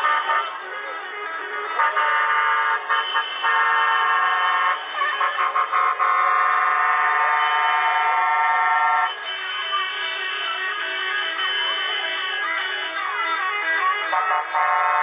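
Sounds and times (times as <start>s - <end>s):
air horns chord: 1.8s - 9.3s.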